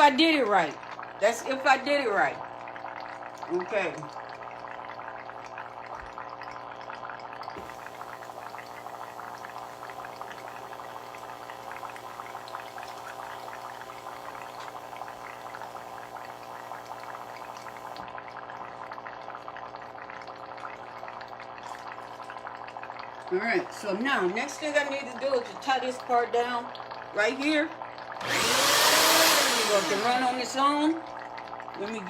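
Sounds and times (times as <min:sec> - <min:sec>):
small motor running: 0:07.6 - 0:18.0, 0:28.2 - 0:30.9.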